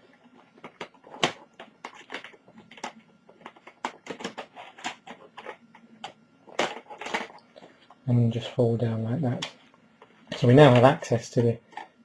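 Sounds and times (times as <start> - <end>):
plastic keyboard clicks and clatter: 0.6 - 7.4.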